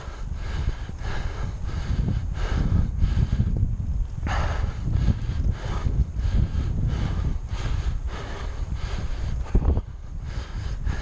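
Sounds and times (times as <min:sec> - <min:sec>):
man breathing heavily: 0:00.0 - 0:11.0
wind buffeting microphone: 0:00.0 - 0:11.0.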